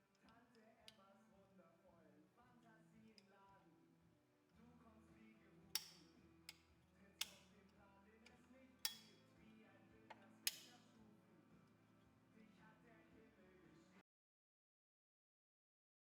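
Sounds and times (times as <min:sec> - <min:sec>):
metal-on-metal clicks: 0:05.8 - 0:07.5, 0:08.9 - 0:09.2, 0:10.5 - 0:10.8.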